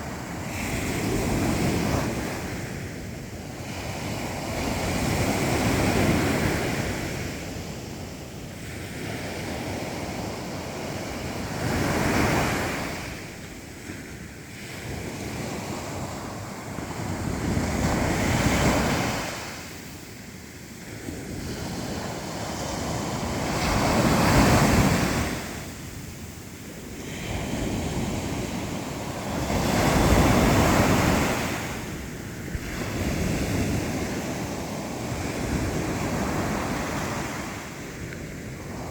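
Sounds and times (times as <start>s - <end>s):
waves breaking: 21.2s - 38.9s.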